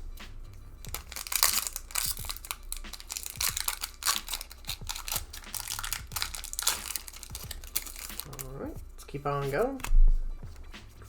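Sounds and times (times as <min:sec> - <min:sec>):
plastic wrapper crinkling and tearing: 0:00.8 - 0:08.8.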